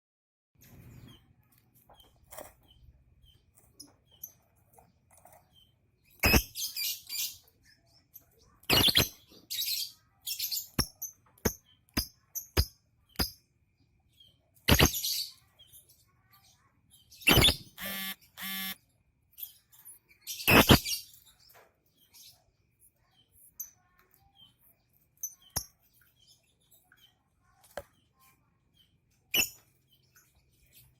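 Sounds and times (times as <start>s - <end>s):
bird chirping softly: 0.6s - 30.9s
buzzy squawk: 17.2s - 18.8s.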